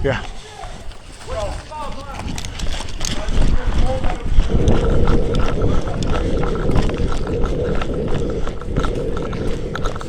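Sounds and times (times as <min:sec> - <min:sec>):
wind rumbling on microphone: 0:00.0 - 0:10.0
clicks and knocks of gear: 0:00.2 - 0:04.2.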